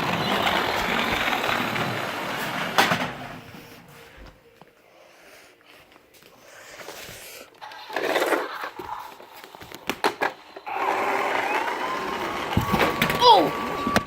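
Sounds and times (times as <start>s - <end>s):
toy car motor whirring: 7.6s - 14.0s.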